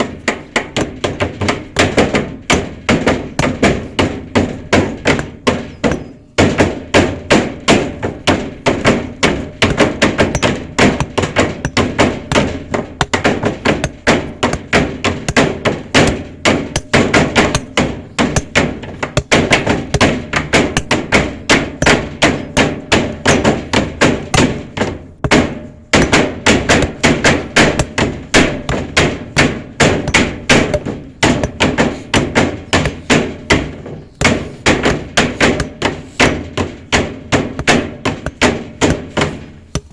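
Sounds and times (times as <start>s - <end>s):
hammering blows: 0.0s - 39.9s.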